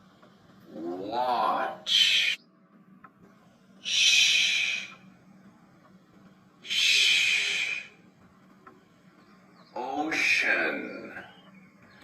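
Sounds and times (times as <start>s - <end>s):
person saying sh: 0.7s - 2.4s, 3.8s - 5.0s, 6.7s - 7.9s.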